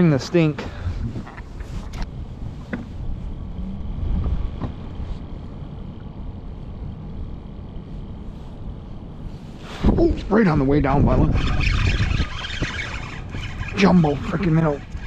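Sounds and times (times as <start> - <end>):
wind: 0.0 - 15.0
river water: 4.6 - 15.0.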